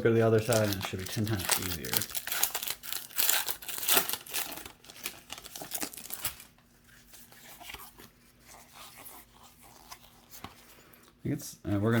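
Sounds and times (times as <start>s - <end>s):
foil wrapper crinkling and tearing: 0.2s - 6.6s.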